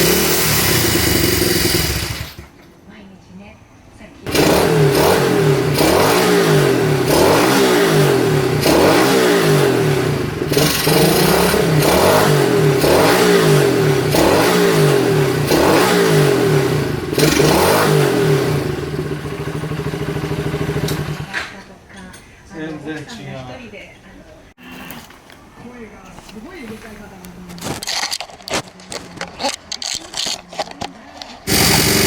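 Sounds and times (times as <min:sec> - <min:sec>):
motorcycle engine revving: 0:00.0 - 0:02.6, 0:04.3 - 0:21.4, 0:31.4 - 0:32.0
engine mechanical noise: 0:00.0 - 0:21.8, 0:26.3 - 0:32.0.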